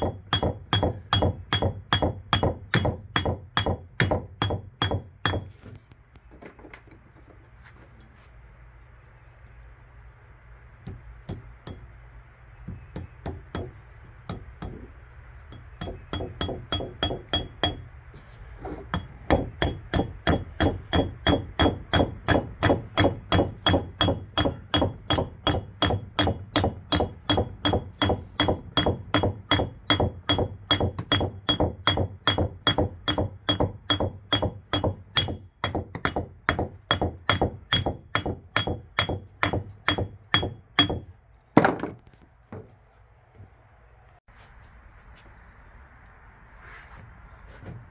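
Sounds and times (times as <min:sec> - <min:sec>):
hammer striking metal: 0:00.0 - 0:05.5, 0:15.5 - 0:17.8, 0:18.9 - 0:41.1.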